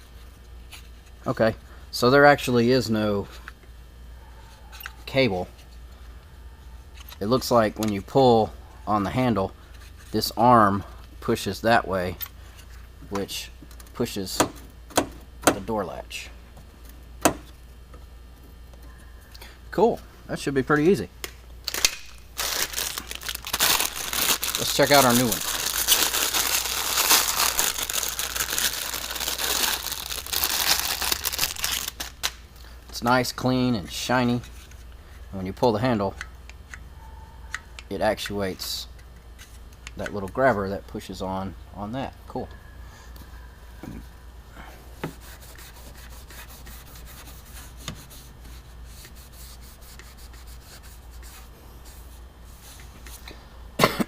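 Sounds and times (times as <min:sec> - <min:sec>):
low steady hum: 0:00.0 - 0:54.0
packaging crinkling: 0:21.7 - 0:32.4.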